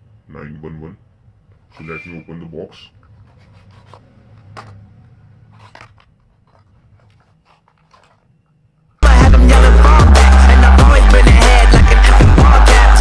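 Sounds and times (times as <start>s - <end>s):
packaging clicks and crinkles: 5.6s - 8.3s
loud hip hop music: 9.0s - 13.0s.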